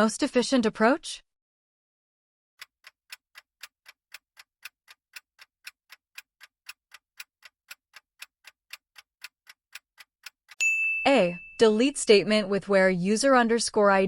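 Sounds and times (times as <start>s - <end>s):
timer ticking clicks: 2.6s - 12.0s.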